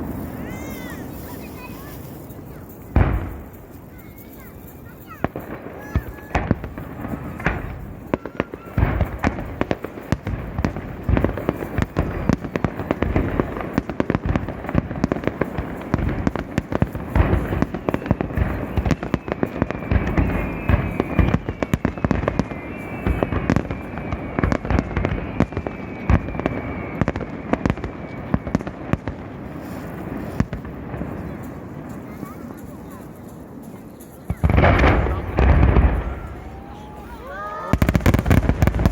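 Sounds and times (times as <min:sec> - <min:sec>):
falling fireworks whistles: 0:00.0 - 0:38.9
fireworks shells bursting: 0:00.0 - 0:38.9.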